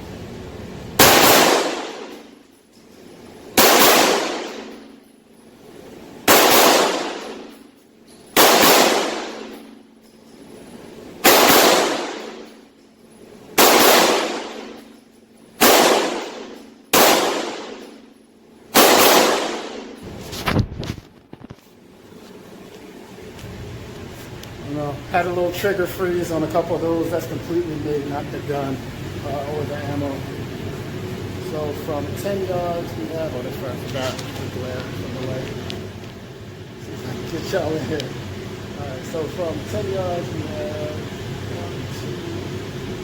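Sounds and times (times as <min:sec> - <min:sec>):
pistol shots echoing indoors: 0:01.0 - 0:20.0.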